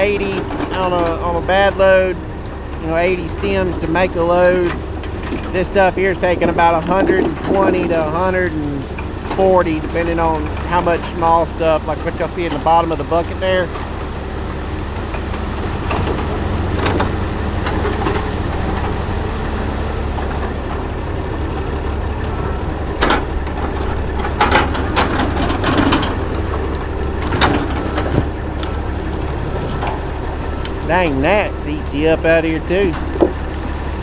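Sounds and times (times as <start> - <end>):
diesel engine running: 0.0 - 34.0
wood knocking on wood: 33.0 - 34.0.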